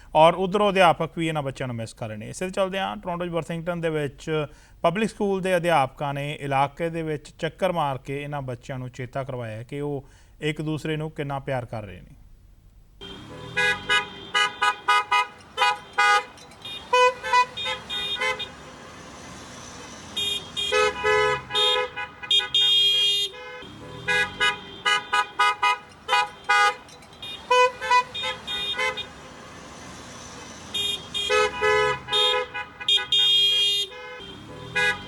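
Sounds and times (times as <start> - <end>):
car horns honking: 13.0 - 35.0.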